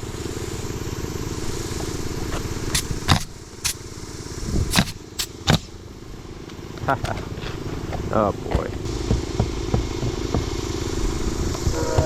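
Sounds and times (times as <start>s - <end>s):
air compressor engine running: 0.0s - 12.0s
pneumatic nailer firing: 2.6s - 3.9s, 4.6s - 5.8s.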